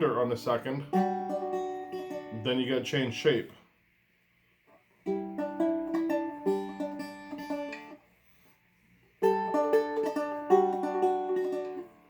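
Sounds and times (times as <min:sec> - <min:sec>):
fingerpicked guitar: 0:00.0 - 0:03.2, 0:05.0 - 0:08.4, 0:09.2 - 0:12.0.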